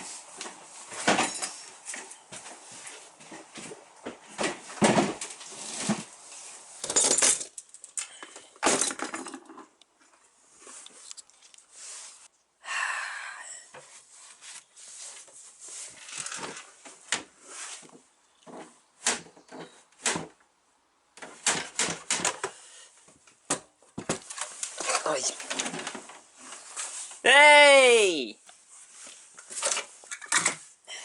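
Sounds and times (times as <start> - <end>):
hard objects clattering: 6.8 - 9.8.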